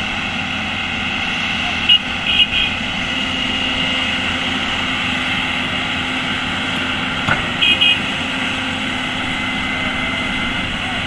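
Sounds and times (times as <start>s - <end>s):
excavator diesel engines running: 0.0s - 11.0s
single knock: 7.2s - 8.4s.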